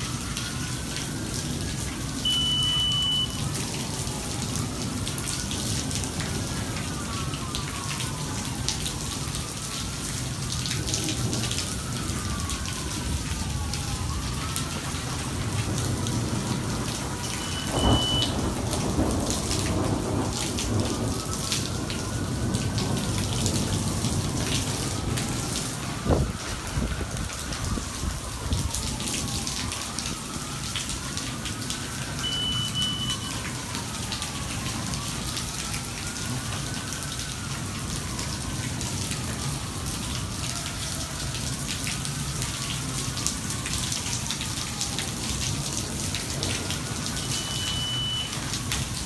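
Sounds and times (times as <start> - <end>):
thunder rumbling: 0.0 - 40.4, 41.0 - 49.0
heavy rain pouring: 0.0 - 49.0
sirens wailing: 0.0 - 49.0
short high electronic beep: 2.3 - 3.4, 17.4 - 18.3.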